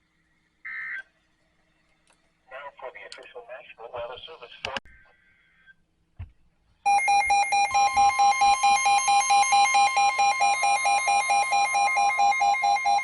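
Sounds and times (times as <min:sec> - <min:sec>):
rapid beeping alarm: 0:06.8 - 0:13.0
steady warning alarm tone: 0:06.8 - 0:13.0.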